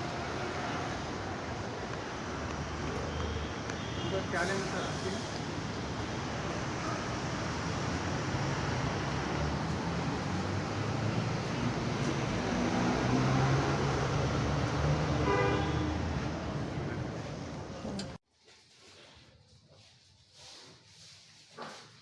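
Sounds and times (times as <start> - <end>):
passing vehicles rumbling: 0.0 - 18.2
car horn toot: 15.2 - 16.0.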